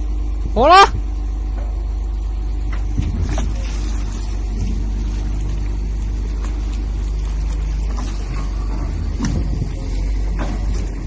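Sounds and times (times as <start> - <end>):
large engine running steadily: 0.0 - 11.0.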